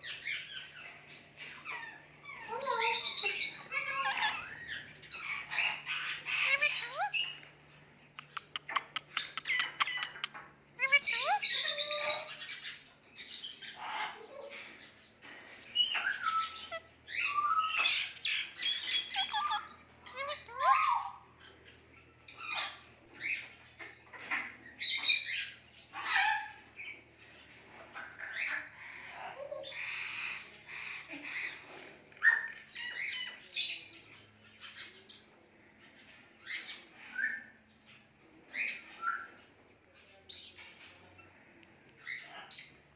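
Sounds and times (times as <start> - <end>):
parrot calling: 1.5 - 7.5, 8.2 - 12.8, 15.9 - 21.4, 22.3 - 27.0.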